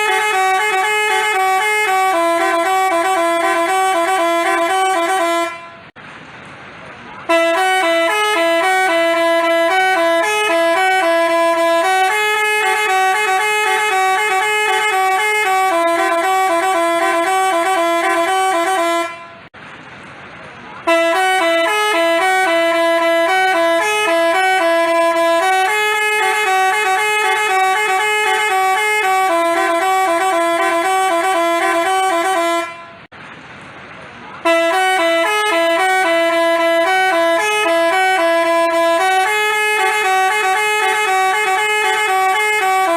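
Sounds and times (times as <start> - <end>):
multi-tone bus horn melody: 0.0 - 6.0, 7.2 - 19.6, 20.8 - 33.1, 34.4 - 42.9.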